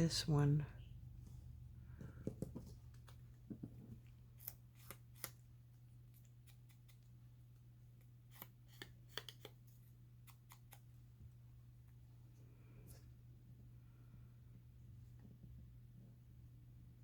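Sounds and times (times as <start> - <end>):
low steady hum: 0.0 - 17.0
scissors cutting paper: 4.0 - 5.5, 6.1 - 7.1, 8.0 - 10.9.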